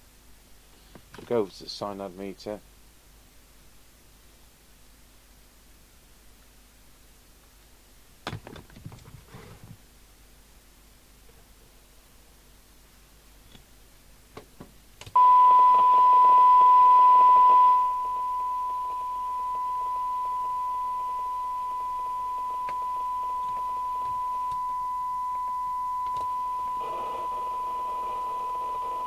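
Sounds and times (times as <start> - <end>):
steady test tone: 15.2 - 29.0
radio hiss: 15.6 - 29.0
clicks: 22.3 - 26.4.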